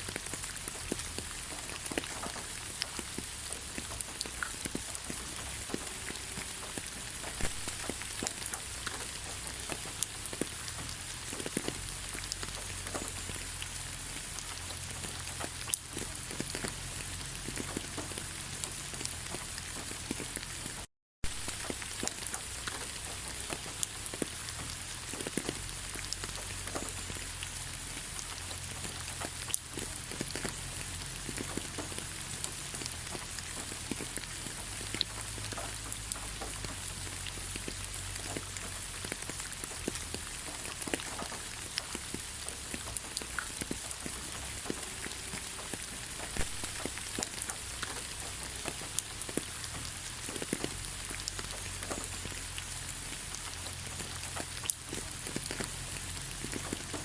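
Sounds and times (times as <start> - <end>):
raindrops ticking: 0.0 - 57.0
steady rain falling: 0.0 - 57.0.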